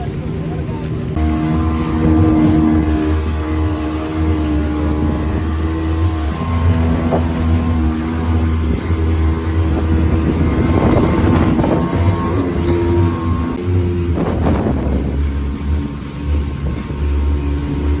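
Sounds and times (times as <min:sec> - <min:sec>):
boat engine running: 0:00.0 - 0:18.0.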